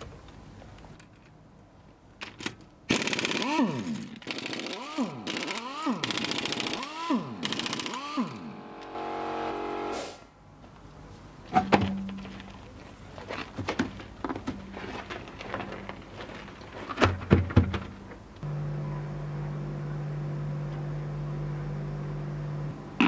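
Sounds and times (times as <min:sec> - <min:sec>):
power tool motor whirring: 0:02.9 - 0:09.0.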